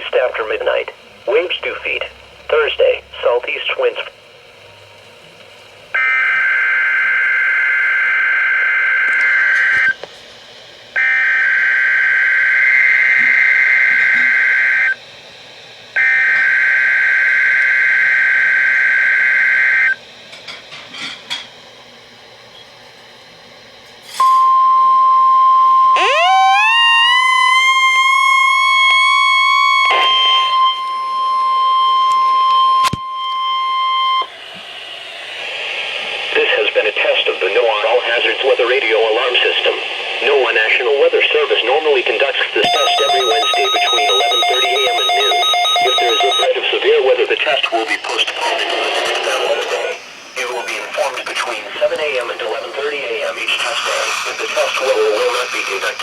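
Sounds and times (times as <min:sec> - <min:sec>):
steady warning alarm tone: 0:05.9 - 0:10.0, 0:10.9 - 0:15.2, 0:15.9 - 0:20.2, 0:24.2 - 0:34.4, 0:42.6 - 0:46.5
warbling digital data bursts: 0:42.6 - 0:46.5.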